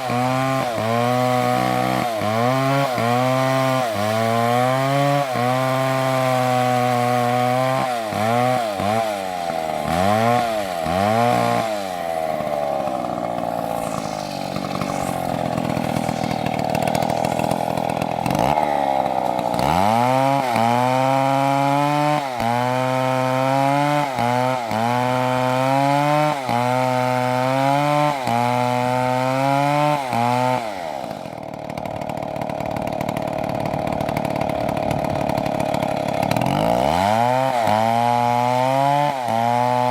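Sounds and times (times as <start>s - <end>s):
chainsaw engine revving: 0.0s - 39.9s.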